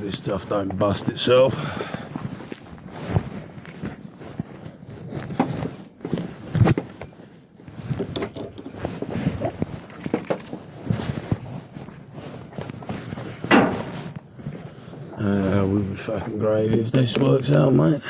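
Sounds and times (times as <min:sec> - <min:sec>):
metal parts clinking and rattling: 0:08.1 - 0:10.8.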